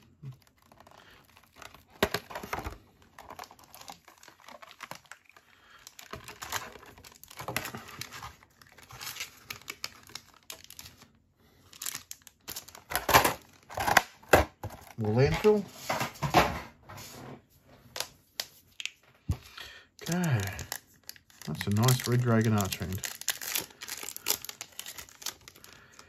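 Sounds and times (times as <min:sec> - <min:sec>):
foil wrapper crinkling and tearing: 0:00.0 - 0:14.2, 0:19.5 - 0:26.0.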